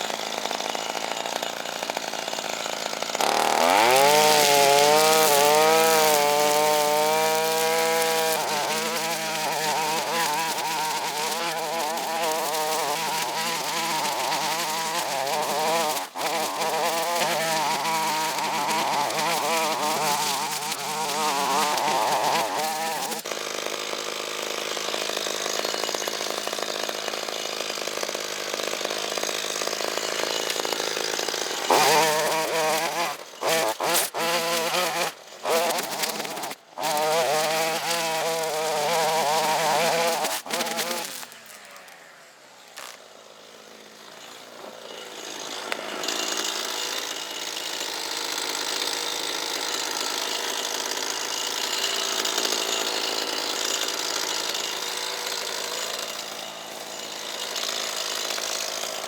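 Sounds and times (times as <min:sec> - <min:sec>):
small two-stroke engine revving: 0:02.9 - 0:23.2, 0:31.2 - 0:43.0.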